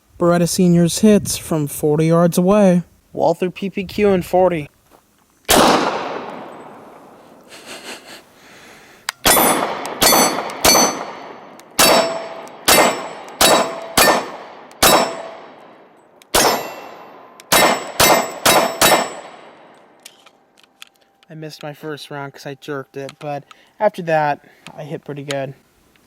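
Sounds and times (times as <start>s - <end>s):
pistol shots: 5.5s - 7.0s, 9.2s - 19.8s
steel plate ringing clang: 9.2s - 15.6s, 16.3s - 19.6s.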